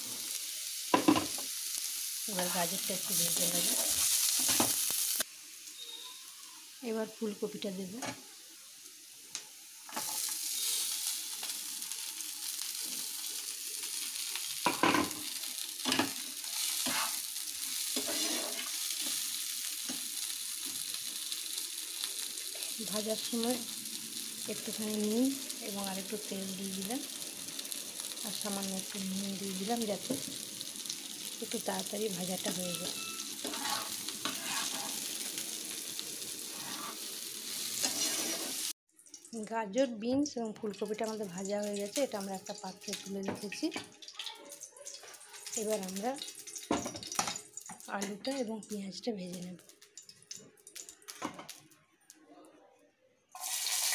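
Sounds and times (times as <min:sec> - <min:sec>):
vegetables sizzling in hot oil: 0:00.0 - 0:51.8, 0:53.4 - 0:53.9
stirring scrapes in a pan: 0:03.6 - 0:04.6, 0:16.0 - 0:19.3, 0:33.0 - 0:35.3, 0:36.4 - 0:38.8
spatula knocking and scraping pan: 0:32.5 - 0:34.9.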